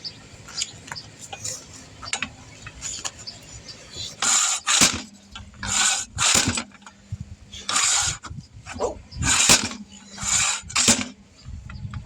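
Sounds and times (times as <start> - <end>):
impact wrench on lug nuts: 4.2 - 6.9, 7.6 - 8.3, 9.2 - 11.2.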